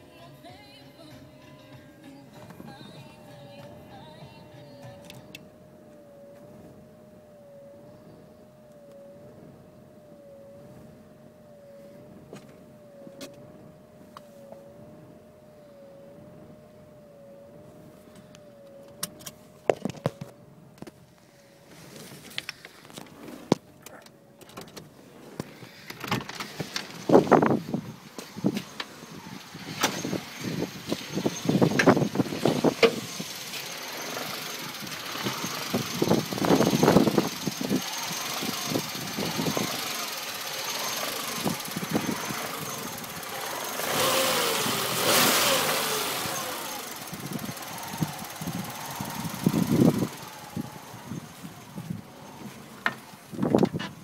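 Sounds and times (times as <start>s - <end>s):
car engine idling roughly: 25.4s - 54.0s.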